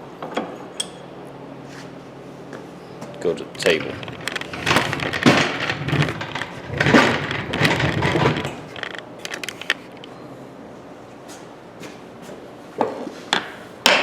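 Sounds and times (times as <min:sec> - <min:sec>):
metal tools clattering: 0:03.6 - 0:09.5.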